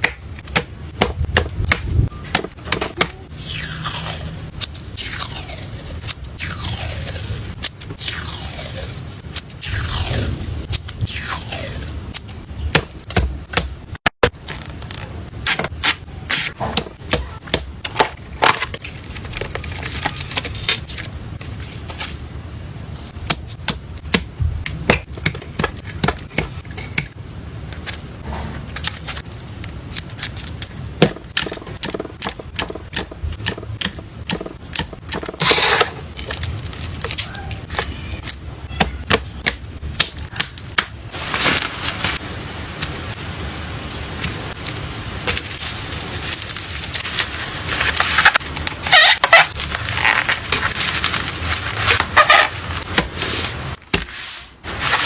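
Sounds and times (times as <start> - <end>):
cards and packaging handled: 14.3 - 16.5, 17.2 - 22.4, 27.7 - 30.9, 35.4 - 39.0, 40.2 - 55.0.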